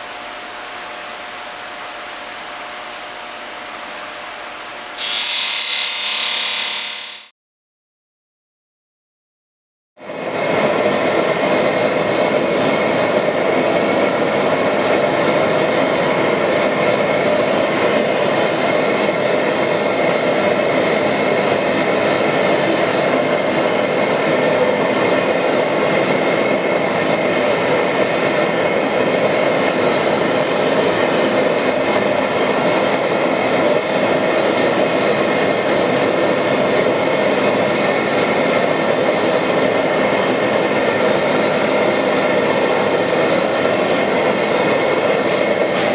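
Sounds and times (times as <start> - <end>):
workshop machine humming: 5.0 - 7.3.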